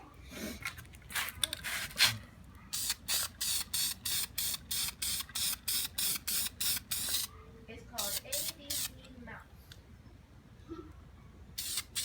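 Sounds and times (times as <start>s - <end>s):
spray paint can spraying: 2.7s - 7.3s, 8.0s - 9.0s, 11.6s - 12.0s.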